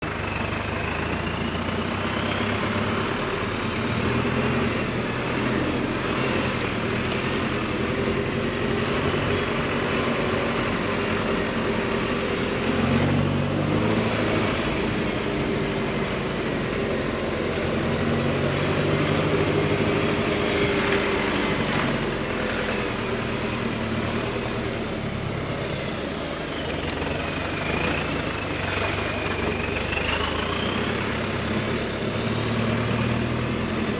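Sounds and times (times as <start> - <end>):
off-road engine drone: 0.0 - 33.9.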